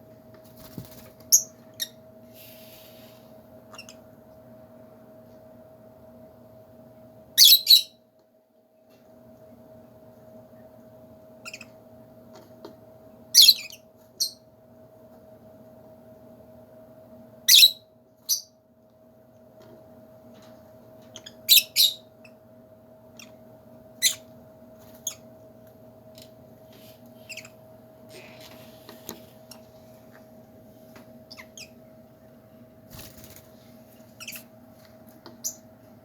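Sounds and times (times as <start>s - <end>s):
low steady hum: 0.0s - 36.0s
lovebirds chirping: 27.2s - 27.6s, 31.3s - 31.8s, 34.2s - 34.5s, 35.4s - 35.7s.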